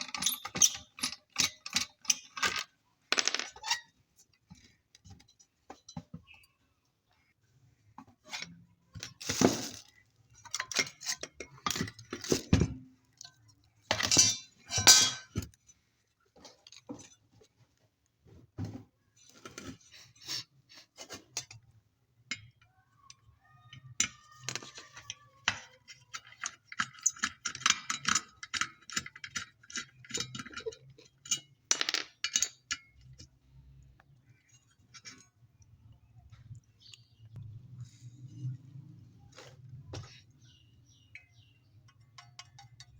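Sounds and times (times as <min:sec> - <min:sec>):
tools clinking against iron: 0:13.9 - 0:15.5, 0:24.0 - 0:33.1.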